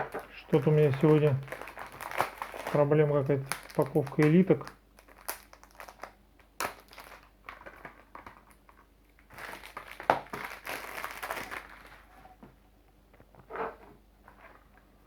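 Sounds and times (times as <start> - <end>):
plastic packaging crinkling: 0.0 - 12.4.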